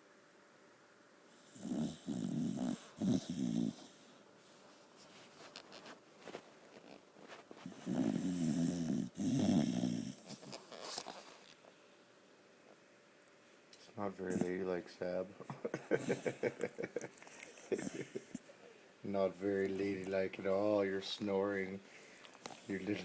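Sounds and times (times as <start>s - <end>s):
dog snoring: 1.3s - 4.2s, 7.6s - 11.1s, 14.3s - 14.6s, 22.0s - 23.0s
dog breathing softly: 21.8s - 23.0s.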